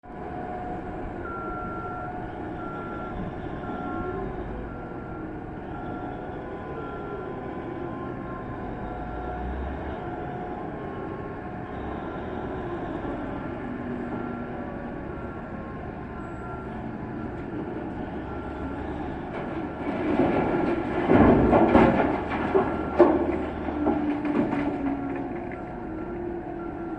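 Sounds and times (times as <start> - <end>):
deep rumble of machinery: 0.0 - 26.9
reversing alarm beeping: 0.1 - 26.9
rumbling clatter with knocks: 19.1 - 25.8.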